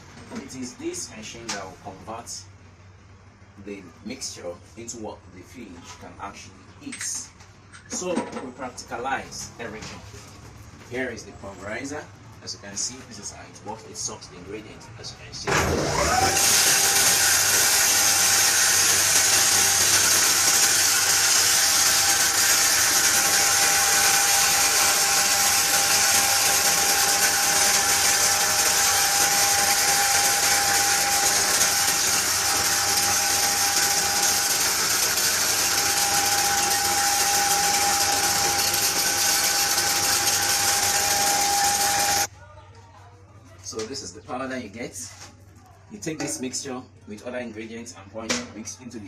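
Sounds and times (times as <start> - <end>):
grinder machine whining: 15.5 - 42.3.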